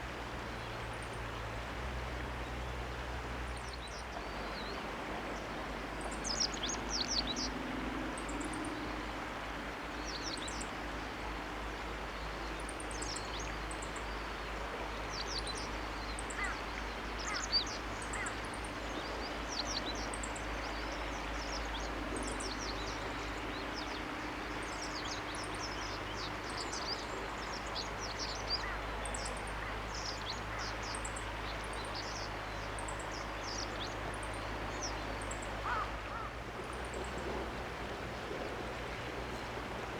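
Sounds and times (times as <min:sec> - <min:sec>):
steady outdoor hiss: 0:00.0 - 0:39.9
wild birds chirping: 0:15.1 - 0:37.3.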